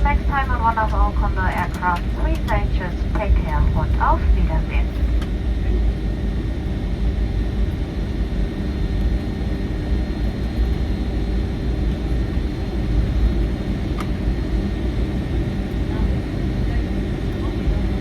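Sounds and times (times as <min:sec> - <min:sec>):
faint steady whine: 0:00.0 - 0:08.2
low aircraft cabin rumble: 0:00.0 - 0:18.0.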